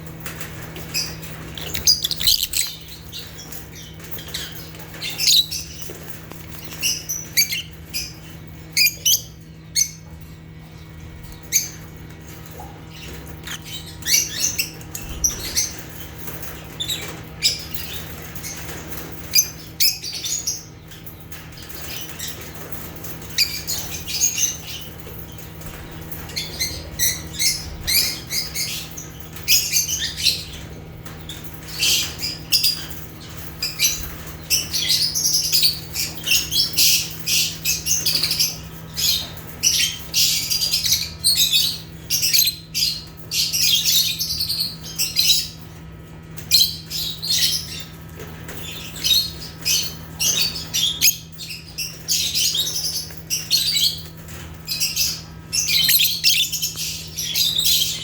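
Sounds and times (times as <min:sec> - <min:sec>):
steady low hum: 0:00.0 - 0:16.7
lovebirds chirping: 0:00.9 - 0:10.0, 0:54.7 - 0:58.0.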